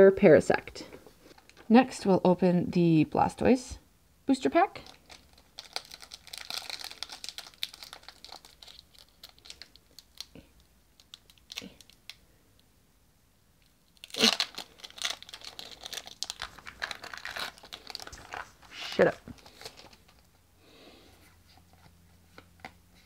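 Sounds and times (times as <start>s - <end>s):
foil wrapper crinkling and tearing: 4.8s - 12.2s, 13.9s - 20.3s.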